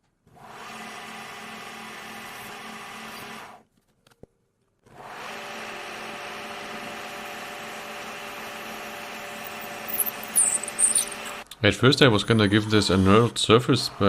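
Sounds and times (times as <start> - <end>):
metal lathe humming: 6.2 - 11.4
high-pitched cutting squeals: 9.4 - 11.4, 12.0 - 14.0.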